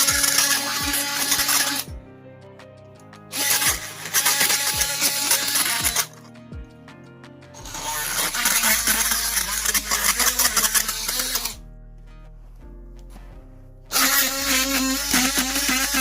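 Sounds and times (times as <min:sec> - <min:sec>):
oscillating multi-tool buzzing: 0:00.0 - 0:01.9, 0:03.3 - 0:06.2, 0:07.6 - 0:11.6, 0:13.9 - 0:16.0
background music: 0:00.0 - 0:16.0.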